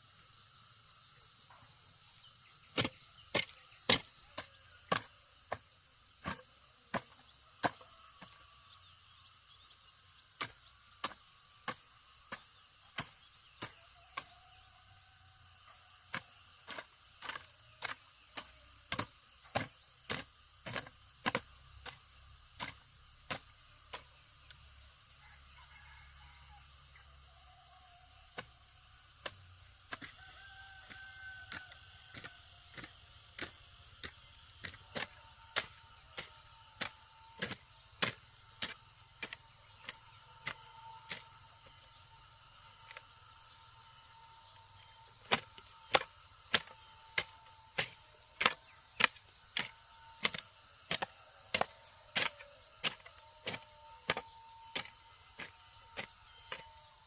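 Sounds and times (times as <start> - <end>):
hand tool striking wood: 2.7 - 8.4, 16.1 - 22.0, 29.2 - 30.2, 30.9 - 41.3, 45.2 - 56.9.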